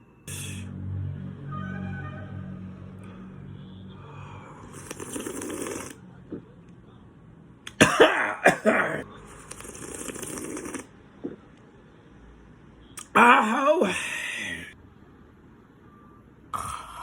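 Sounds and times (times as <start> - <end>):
hissy slurping: 4.6 - 6.0, 9.4 - 11.4.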